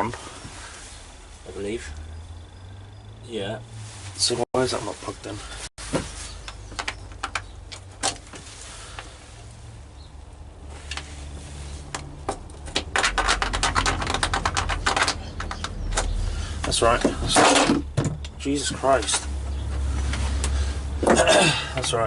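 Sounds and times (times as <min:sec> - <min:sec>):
cables and plugs clicking: 0:06.4 - 0:08.3, 0:11.9 - 0:16.8.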